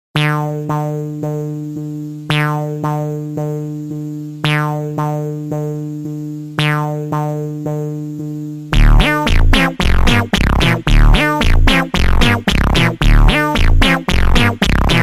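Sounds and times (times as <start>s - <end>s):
repeating struck ringing notes: 8.8s - 15.0s.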